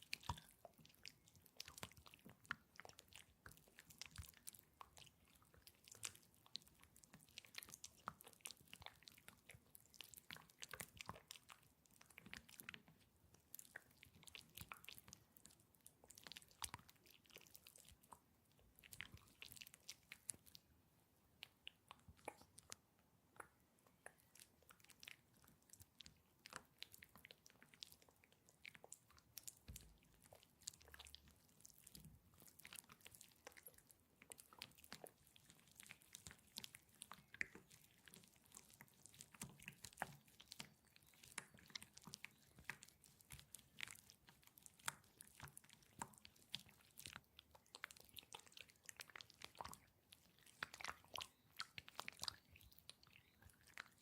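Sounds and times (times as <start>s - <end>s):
wet sticky gel squelches: 0.0s - 54.0s.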